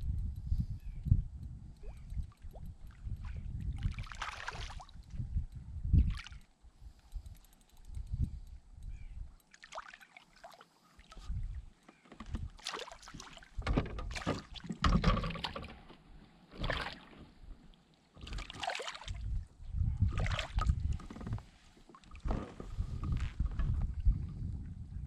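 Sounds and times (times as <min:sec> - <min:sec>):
kayak knocks and rustling: 0:11.9 - 0:17.5, 0:20.8 - 0:24.0.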